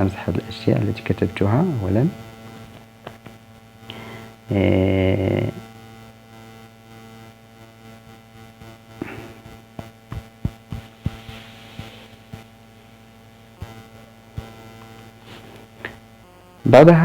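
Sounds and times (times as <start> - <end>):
electrical hum: 0.0 - 17.0
man's hesitation sound: 3.9 - 5.7.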